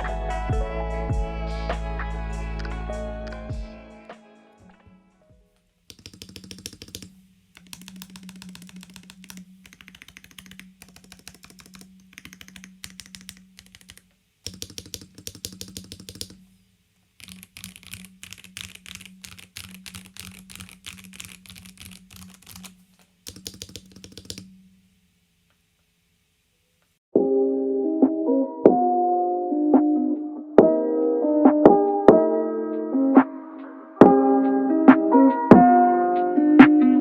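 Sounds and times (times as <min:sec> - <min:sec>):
mechanical keyboard typing: 0:05.9 - 0:16.4, 0:17.2 - 0:24.5.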